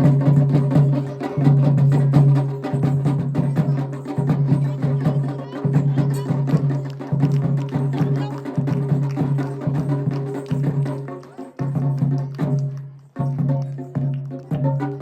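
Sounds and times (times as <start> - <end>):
fast drum and percussion strokes: 0.0 - 15.0.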